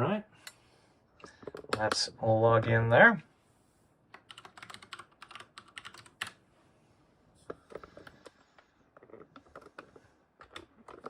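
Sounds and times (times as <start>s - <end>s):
computer keyboard typing: 1.4s - 2.0s, 4.1s - 6.4s, 7.5s - 11.0s.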